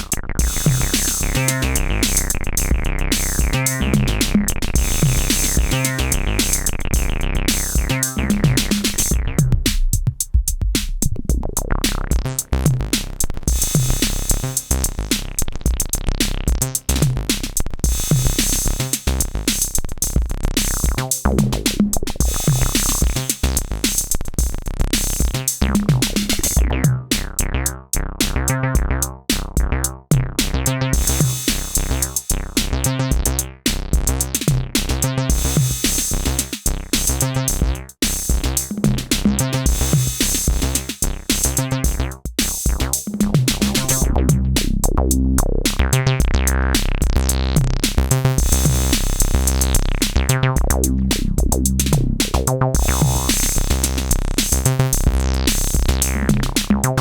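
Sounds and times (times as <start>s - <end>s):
synthesizer bass line: 0.0s - 9.8s, 11.2s - 57.0s
drum machine beat: 0.0s - 57.0s.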